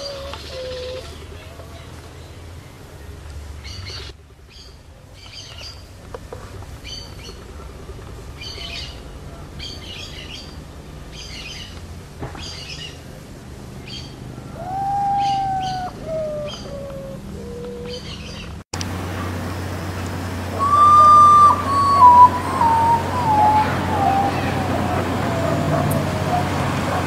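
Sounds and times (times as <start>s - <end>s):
bird's mournful falling whistle: 14.6s - 18.0s, 20.5s - 26.6s.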